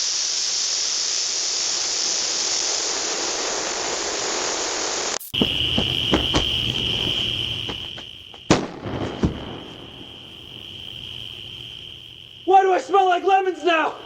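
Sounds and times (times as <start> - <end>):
smoke bomb hissing: 0.0 - 12.5
sharp pops: 5.1 - 9.9.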